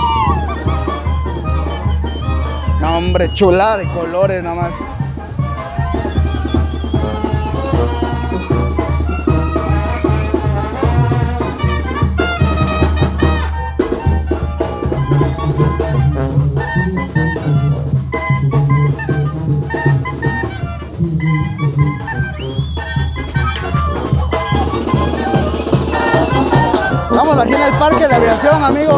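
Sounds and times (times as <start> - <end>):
drum beat: 0.0 - 16.0, 22.1 - 28.9
brass band playing: 0.0 - 28.9.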